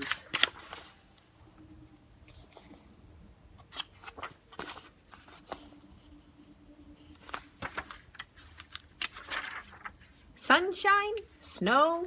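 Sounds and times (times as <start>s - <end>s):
book pages rustling: 0.0s - 1.4s, 2.3s - 3.0s, 3.6s - 10.2s.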